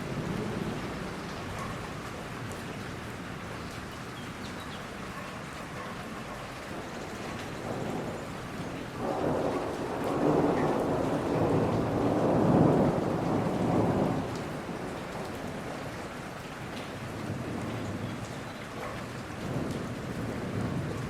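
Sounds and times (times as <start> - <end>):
steady rain: 0.0 - 21.0
thunder rolling: 7.5 - 14.8.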